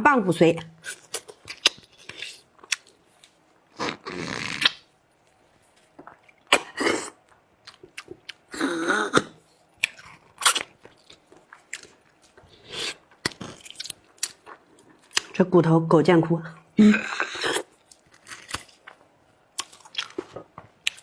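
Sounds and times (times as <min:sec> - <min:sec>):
wet chewing and clicking: 0:05.8 - 0:08.5, 0:09.2 - 0:15.3, 0:17.8 - 0:21.0.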